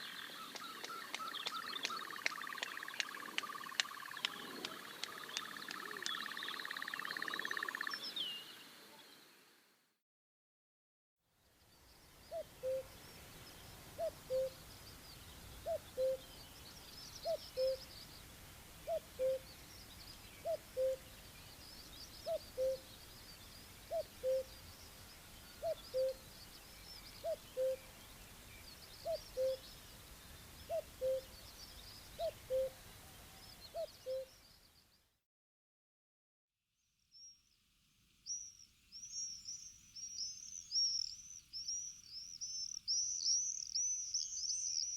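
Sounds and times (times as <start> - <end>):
cuckoo calling: 0.0 - 8.0, 12.3 - 13.0, 14.0 - 14.6, 15.6 - 16.4, 17.2 - 17.9, 18.8 - 19.5, 20.4 - 21.1, 22.2 - 22.9, 23.8 - 24.6, 25.6 - 26.3, 27.2 - 27.9, 29.0 - 29.6, 30.6 - 31.4, 32.1 - 32.8, 33.7 - 34.3
small birds chirping faintly: 0.0 - 9.9, 11.3 - 35.2, 36.8 - 44.9.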